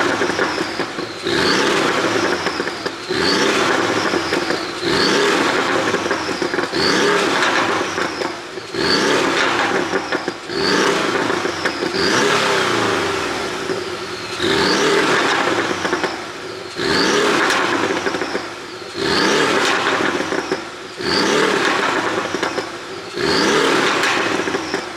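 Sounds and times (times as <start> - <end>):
car engine revving: 0.0 - 24.9
exhaust popping and crackling: 0.0 - 24.9.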